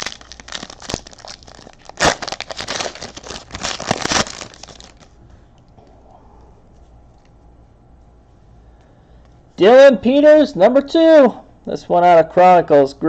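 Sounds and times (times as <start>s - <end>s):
card wrappers torn and crinkled: 0.0s - 5.1s.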